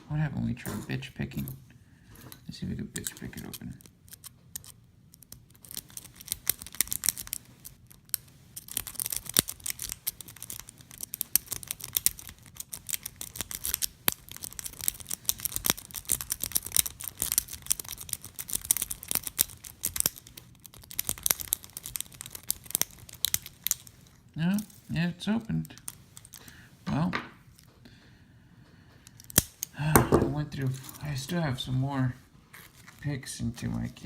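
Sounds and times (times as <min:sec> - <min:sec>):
lock pick clicking and scraping: 0:03.0 - 0:23.9, 0:29.0 - 0:29.7.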